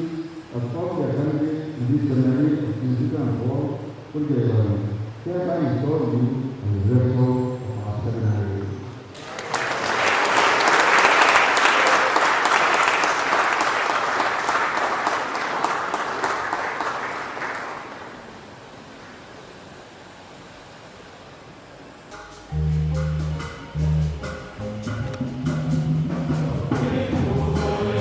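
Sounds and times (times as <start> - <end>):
congregation applauding: 9.1 - 18.4.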